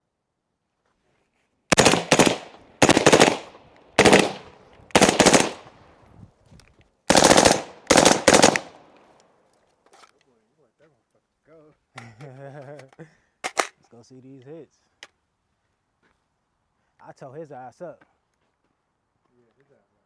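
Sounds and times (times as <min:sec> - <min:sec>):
rifle firing rapid strings: 0:01.7 - 0:05.7, 0:07.1 - 0:08.9.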